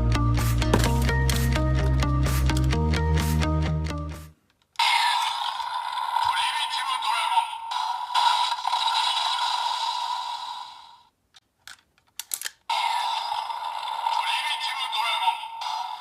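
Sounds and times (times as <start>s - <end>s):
toy electronic sound effects: 4.8s - 11.1s, 12.7s - 16.0s
plastic clicks: 11.3s - 12.7s.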